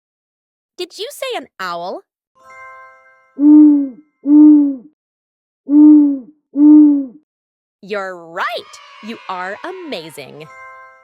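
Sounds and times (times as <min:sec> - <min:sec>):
owl hooting: 0:03.4 - 0:04.9, 0:05.7 - 0:07.2.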